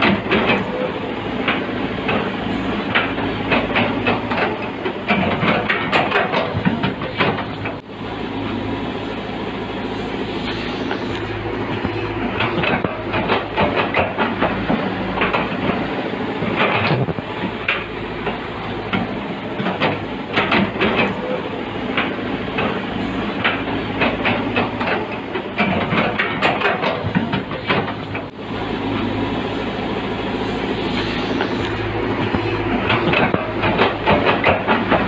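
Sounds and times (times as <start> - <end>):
diesel engine running: 0.0 - 35.0
metallic clanks and rattles: 11.1 - 15.8, 23.4 - 28.3, 31.4 - 35.0.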